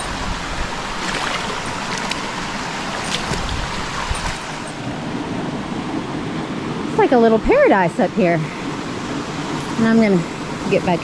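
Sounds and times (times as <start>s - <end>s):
creek water rushing over rocks: 0.0s - 11.0s.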